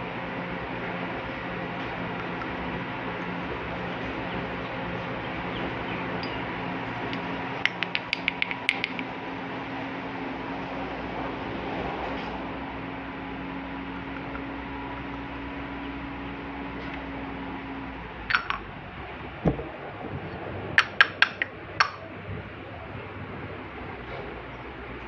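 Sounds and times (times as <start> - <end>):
toy dishes clinking: 18.3 - 18.7, 20.8 - 22.0
dull knock: 19.4 - 19.7.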